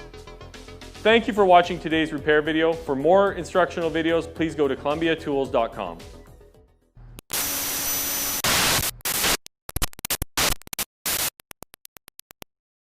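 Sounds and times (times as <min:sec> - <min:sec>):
electronic static hiss: 0:07.2 - 0:11.4
glitchy stutter: 0:07.3 - 0:12.4.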